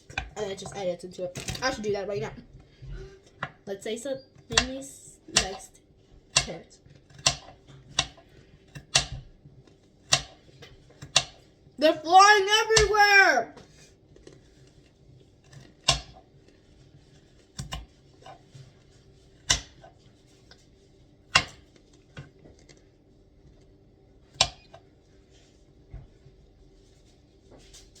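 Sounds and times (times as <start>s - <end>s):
knife chopping on cutting board: 10.1s - 10.4s.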